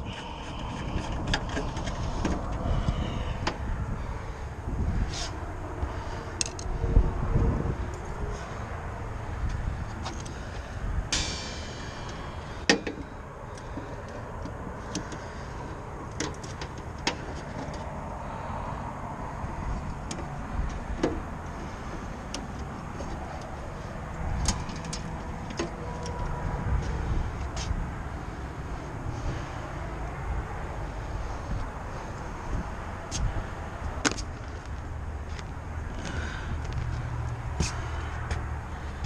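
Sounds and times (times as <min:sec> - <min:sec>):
rattle: 0:09.5 - 0:14.2.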